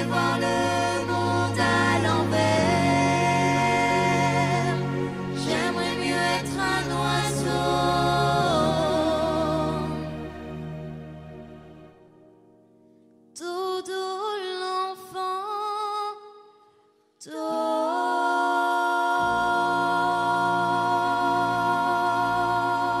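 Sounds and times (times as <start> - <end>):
a cappella vocal trio singing: 0.0 - 10.6, 17.2 - 23.0.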